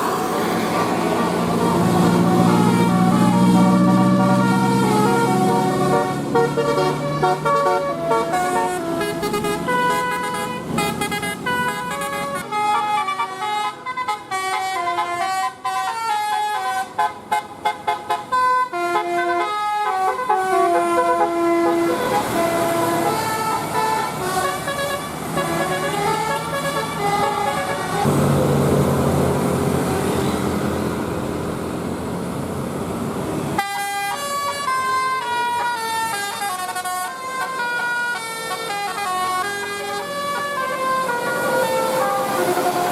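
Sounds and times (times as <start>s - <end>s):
musical air horn playing a tune: 1.6s - 28.1s, 33.6s - 42.9s
loud rushing noise: 27.9s - 31.7s.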